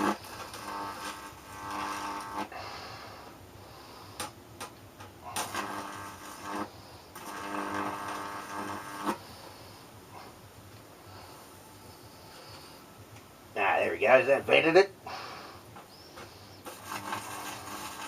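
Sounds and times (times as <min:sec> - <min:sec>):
sharp electrical snaps: 0:00.0 - 0:02.5, 0:04.1 - 0:09.2, 0:16.6 - 0:18.0
transformer buzzing: 0:00.0 - 0:02.5, 0:05.3 - 0:09.4
electrical pops: 0:04.2 - 0:09.2, 0:15.8 - 0:18.0.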